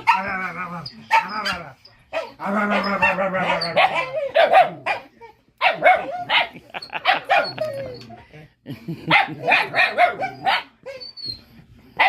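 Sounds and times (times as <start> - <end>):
puppy barking and yipping: 0.0 - 8.0, 9.1 - 11.4.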